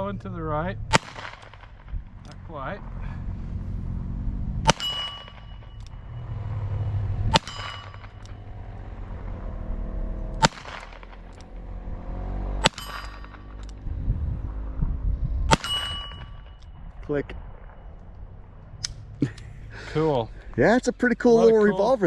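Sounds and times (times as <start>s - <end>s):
revolver shots with metallic ring: 0.8s - 3.0s, 4.5s - 13.9s, 15.5s - 19.1s.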